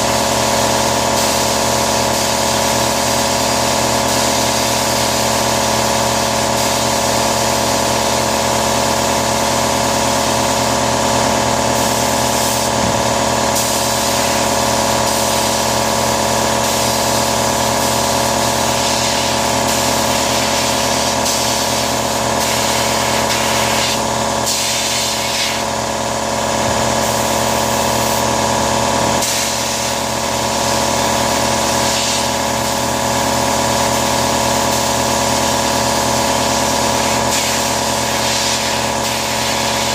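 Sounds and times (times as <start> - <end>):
sandblaster hissing: 13.5 - 25.7, 27.0 - 28.3, 29.2 - 32.9, 37.0 - 39.9.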